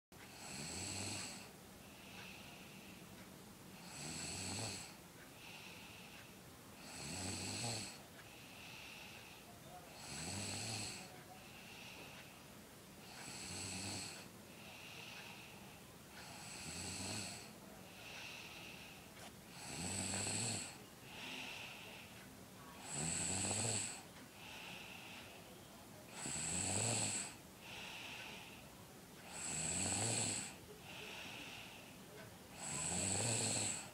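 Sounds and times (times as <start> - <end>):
loud snoring: 0.3 - 1.5, 3.8 - 5.0, 6.8 - 8.0, 10.0 - 11.1, 13.0 - 15.4, 16.2 - 18.8, 19.5 - 21.9, 22.8 - 24.9, 26.1 - 28.5, 29.2 - 31.7, 32.5 - 33.9.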